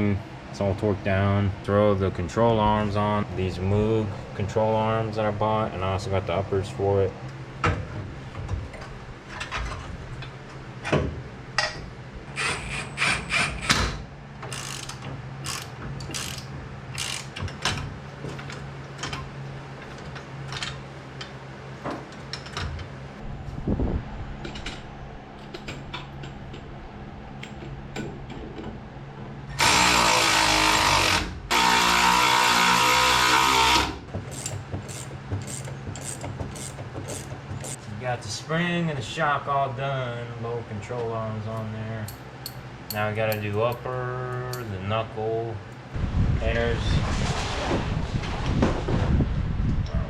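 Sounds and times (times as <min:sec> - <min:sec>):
power tool bursts: 0:12.3 - 0:14.9, 0:29.6 - 0:34.0
hand tools clicking and clanking: 0:31.5 - 0:37.8, 0:42.0 - 0:44.8.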